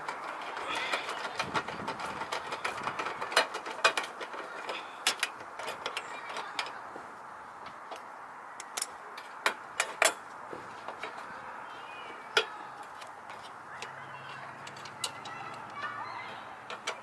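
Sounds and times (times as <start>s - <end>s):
plastic parts clicking and knocking: 0.0s - 6.8s, 16.6s - 17.0s.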